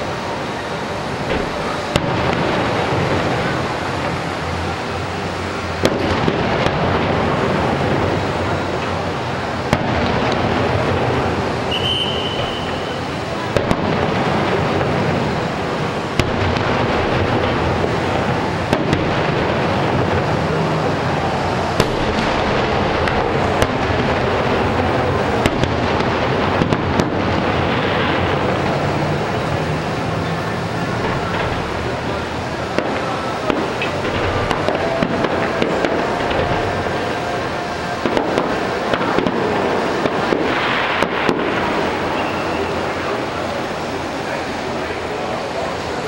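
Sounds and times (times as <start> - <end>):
fireworks rumbling bursts: 0.0 - 46.0
sharp firework cracks: 1.1 - 45.3
high firework whistle: 11.5 - 13.8, 32.6 - 43.6.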